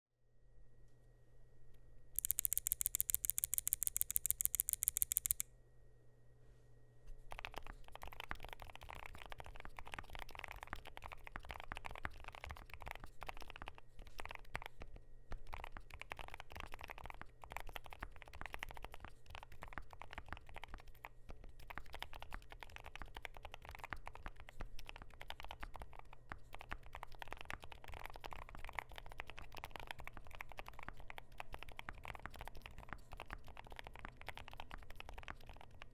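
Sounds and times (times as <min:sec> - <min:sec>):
keyboard typing: 0:02.2 - 0:05.4, 0:07.3 - 0:14.7, 0:15.5 - 0:35.9
rapid sharp clicks: 0:02.2 - 0:05.4.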